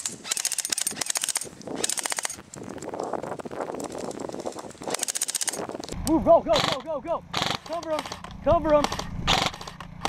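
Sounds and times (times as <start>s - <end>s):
airsoft guns firing bursts: 0.0s - 2.6s, 4.8s - 5.8s, 6.5s - 9.8s.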